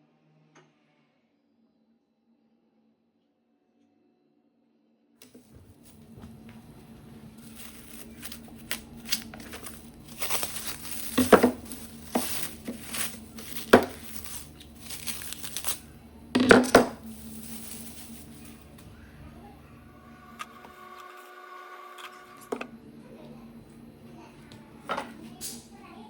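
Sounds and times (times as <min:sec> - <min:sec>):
crinkling and scraping: 0:05.2 - 0:19.5
faint steady hum: 0:05.2 - 0:26.0.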